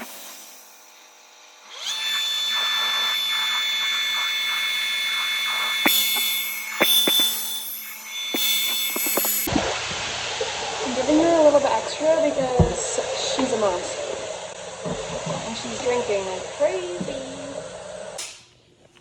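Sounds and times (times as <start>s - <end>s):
small electric motor whining: 0.0s - 9.5s.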